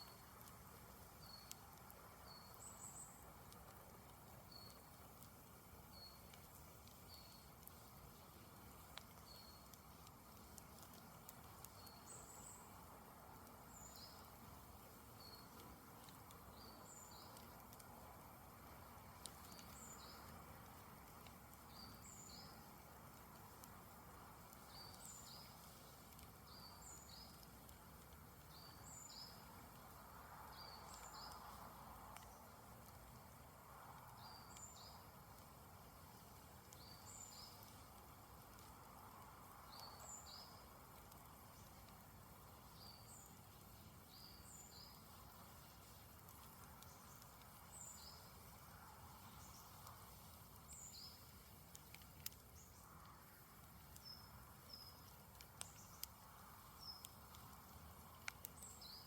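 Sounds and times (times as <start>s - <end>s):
campfire hissing and popping: 0.0s - 59.0s
bird chirping: 2.2s - 3.3s, 4.4s - 4.9s, 5.9s - 7.6s, 21.7s - 22.7s, 44.0s - 45.1s, 46.8s - 48.4s, 50.6s - 51.3s, 58.5s - 59.0s.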